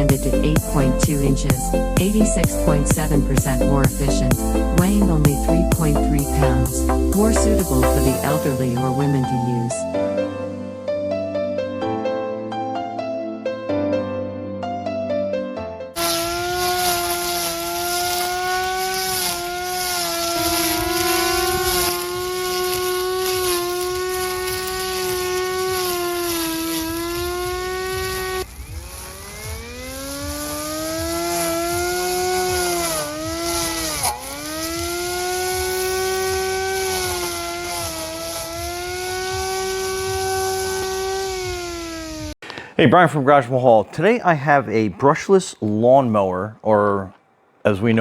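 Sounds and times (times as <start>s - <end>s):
grass trimmer motor whining: 0.0s - 10.1s, 16.0s - 42.4s.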